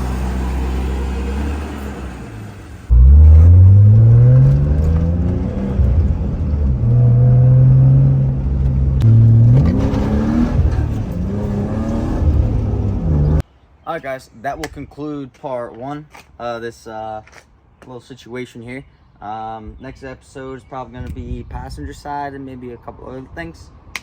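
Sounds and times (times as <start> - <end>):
car engine accelerating hard: 0.0 - 13.4.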